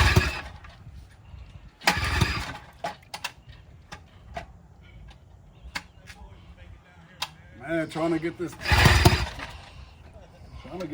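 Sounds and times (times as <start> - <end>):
outboard motor pull-start burst: 0.0 - 0.8, 1.8 - 3.4, 8.5 - 9.8.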